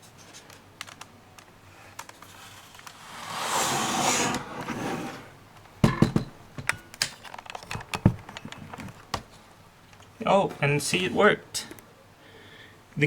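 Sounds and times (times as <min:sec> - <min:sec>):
laptop keyboard clicks and knocks: 0:00.8 - 0:02.2
rushing noise: 0:02.8 - 0:04.8.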